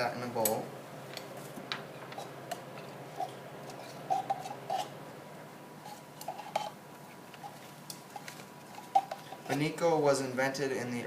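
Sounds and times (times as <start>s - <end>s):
faint background hum: 0.0s - 11.0s
utensil scraping a can and bowl: 2.0s - 5.0s, 5.8s - 9.8s.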